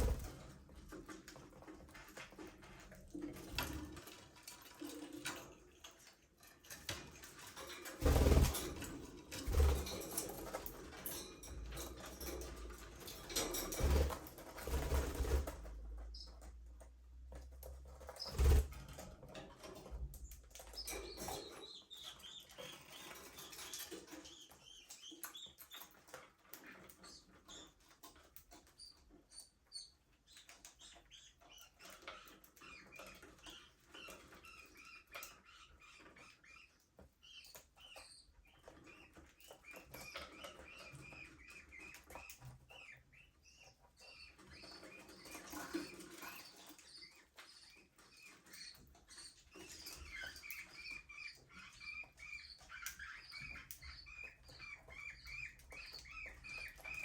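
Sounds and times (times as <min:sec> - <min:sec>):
wings flapping: 0:07.9 - 0:10.0, 0:13.6 - 0:15.7, 0:18.2 - 0:19.0
budgerigars chirping: 0:28.8 - 0:57.0.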